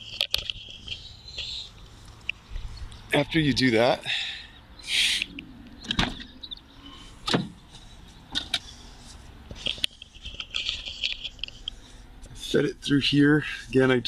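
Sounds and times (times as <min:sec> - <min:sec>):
rustling of wire: 0:07.6 - 0:12.4.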